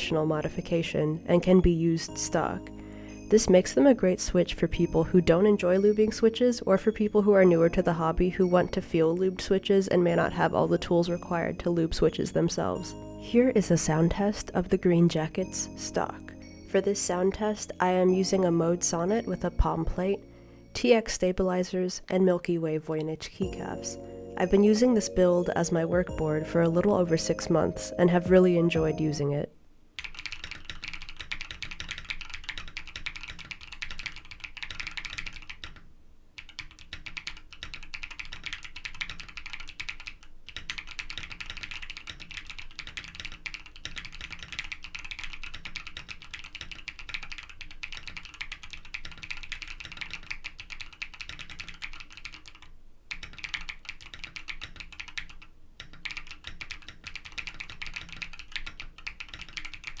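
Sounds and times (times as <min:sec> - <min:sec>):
mechanical keyboard typing: 0:30.0 - 1:00.0.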